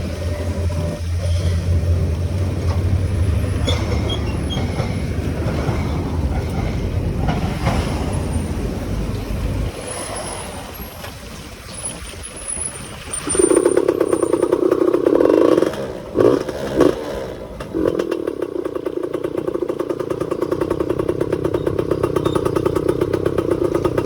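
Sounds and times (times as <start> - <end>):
wind and road noise: 0.0 - 24.0
two-stroke motorcycle engine running: 13.2 - 24.0.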